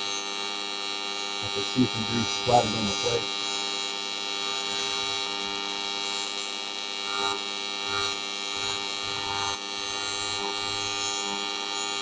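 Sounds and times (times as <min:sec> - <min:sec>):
welding arc buzzing: 0:00.0 - 0:12.0.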